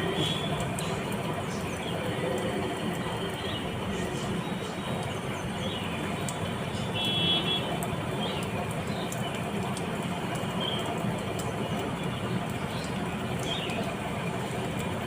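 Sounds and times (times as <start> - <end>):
traffic rumble: 0.0 - 15.0.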